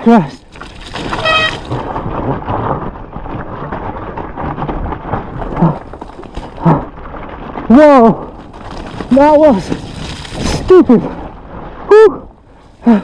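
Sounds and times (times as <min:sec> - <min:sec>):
mountain bike rushing on muddy trail: 0:00.0 - 0:13.0
wind rumbling on microphone: 0:00.4 - 0:12.8
short high-pitched squeal: 0:01.1 - 0:01.6.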